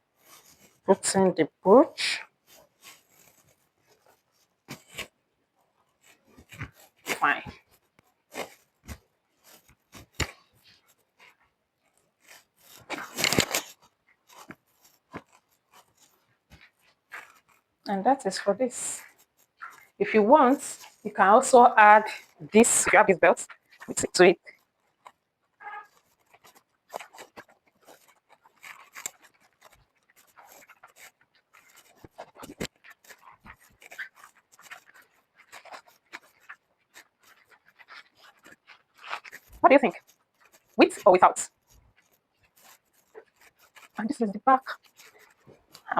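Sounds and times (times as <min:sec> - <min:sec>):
jacket fabric rustling: 0:00.0 - 0:00.9, 0:02.2 - 0:45.9.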